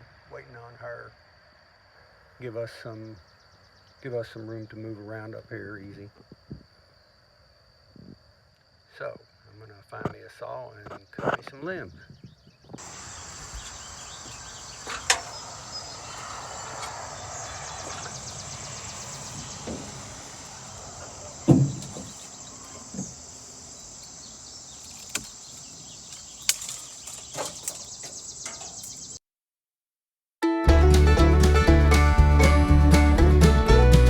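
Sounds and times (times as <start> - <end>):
insect hum and hiss: 0.0 - 29.2
thump: 19.2 - 20.4, 21.4 - 22.3, 22.9 - 23.2
sharp snaps and knocks: 23.8 - 29.1.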